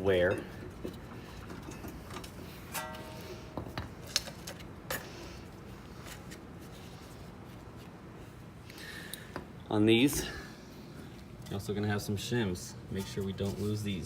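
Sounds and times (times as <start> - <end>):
short metallic ring: 2.8 - 3.5.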